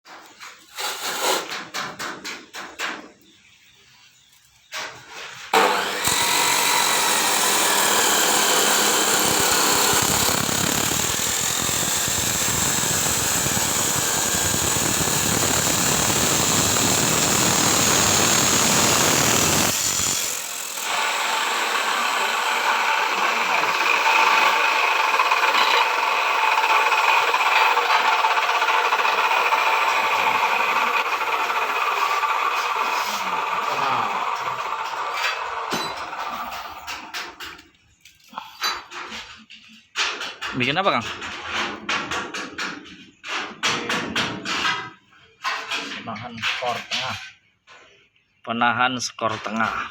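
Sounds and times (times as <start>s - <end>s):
abrasive cut-off machine cutting: 5.6s - 37.0s.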